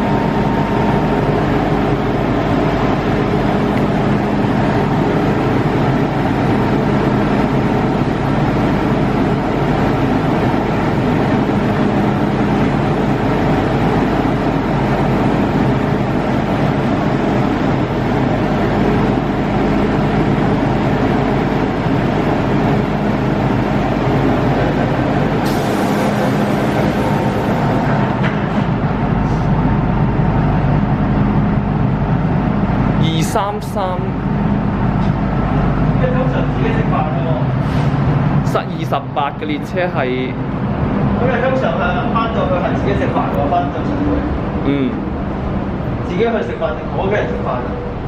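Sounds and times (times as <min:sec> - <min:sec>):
electric train rumble: 0:00.0 - 0:48.0.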